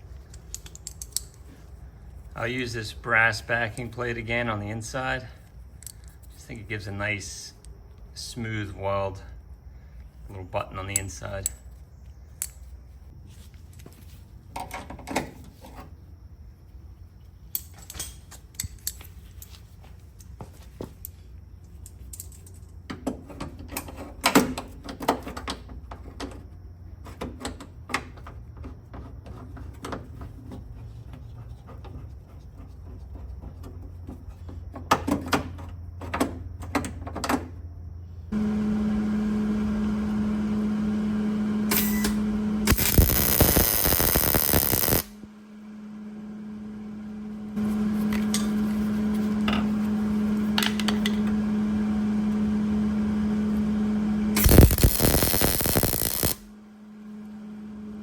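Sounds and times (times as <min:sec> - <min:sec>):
welder humming: 0:38.3 - 0:58.0
weld crackling: 0:41.6 - 0:45.3, 0:54.2 - 0:56.6.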